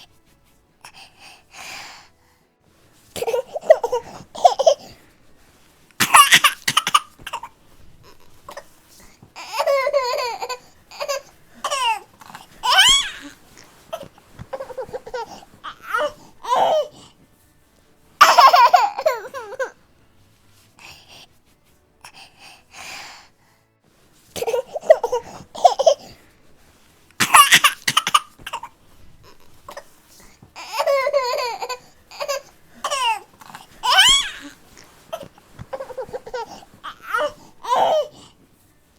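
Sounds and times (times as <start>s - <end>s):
baby fussing: 3.2s - 17.2s, 18.2s - 19.8s, 24.4s - 26.3s, 27.2s - 38.4s.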